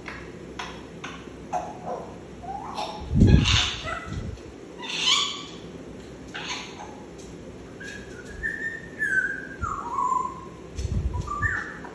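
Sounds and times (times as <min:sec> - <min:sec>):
sharp noisy parrot sounds: 0:00.6 - 0:04.2, 0:04.8 - 0:05.7, 0:06.3 - 0:07.1
parrot whistling a tune: 0:07.8 - 0:10.5, 0:11.2 - 0:11.8.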